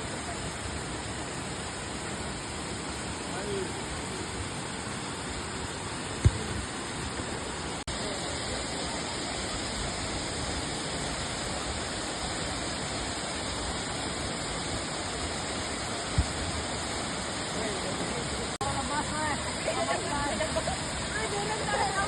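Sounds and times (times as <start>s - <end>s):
waterfall rushing: 0.0s - 22.0s
low thump: 6.2s - 6.7s, 16.1s - 16.6s.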